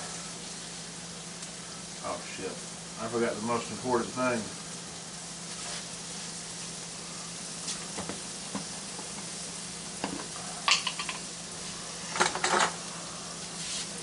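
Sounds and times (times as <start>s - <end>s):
ham sizzling on a griddle: 0.0s - 14.0s
utensils clinking against dishes: 10.0s - 11.2s.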